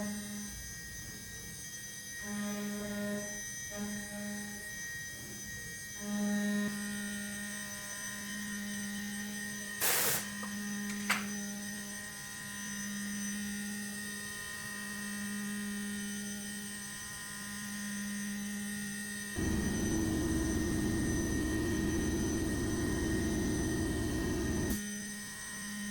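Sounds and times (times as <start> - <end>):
short hiss: 9.8 - 10.3
cnc spindle humming: 19.4 - 24.8.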